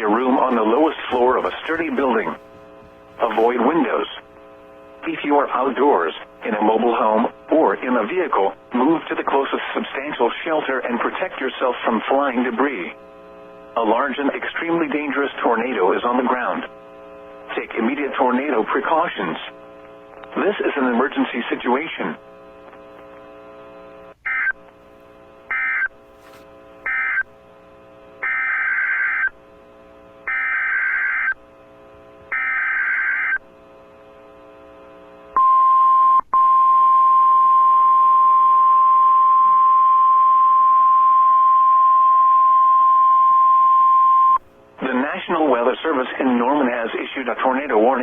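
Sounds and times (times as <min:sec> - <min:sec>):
faint hum: 0:00.0 - 0:48.0
steady alarm tone: 0:25.5 - 0:26.0, 0:26.8 - 0:27.3, 0:28.2 - 0:29.3.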